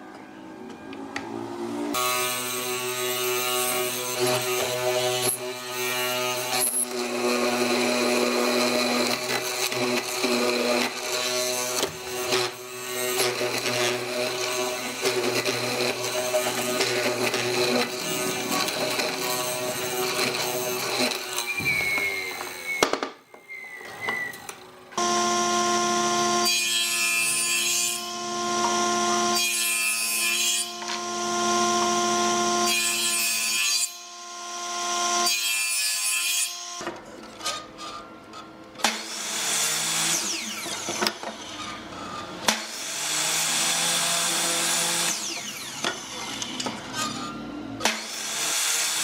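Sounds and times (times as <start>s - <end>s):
wood cutting noise: 0.1s - 49.0s
power tool motor running: 25.0s - 26.4s, 27.8s - 29.4s.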